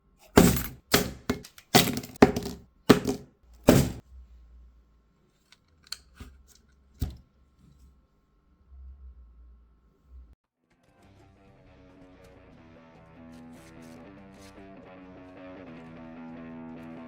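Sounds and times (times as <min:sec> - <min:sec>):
loud knocks: 0:00.4 - 0:04.0.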